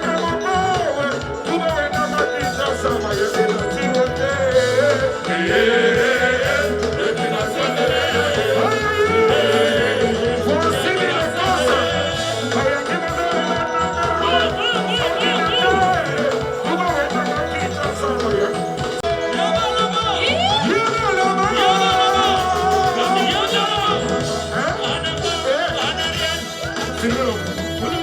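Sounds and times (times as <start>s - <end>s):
live band playing rumba: 0.0s - 28.0s
person singing: 0.0s - 28.0s.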